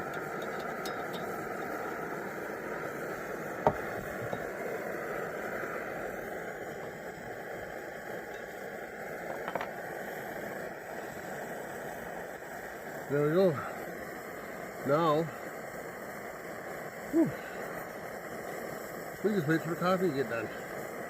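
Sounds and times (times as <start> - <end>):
stove burner burning: 0.0 - 21.0.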